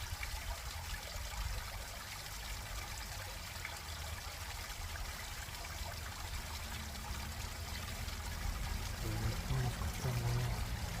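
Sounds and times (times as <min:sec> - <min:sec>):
stream water trickling: 0:00.0 - 0:11.0.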